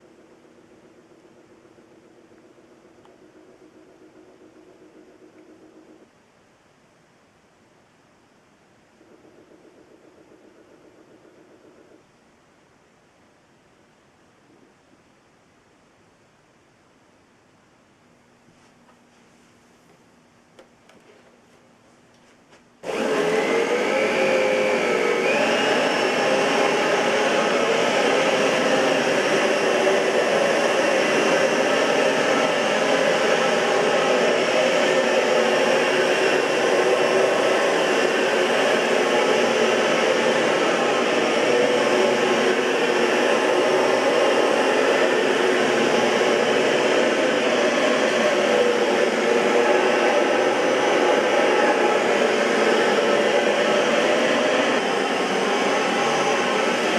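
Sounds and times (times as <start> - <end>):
vacuum cleaner motor whine: 0.0 - 6.1, 8.7 - 12.4, 22.8 - 56.9.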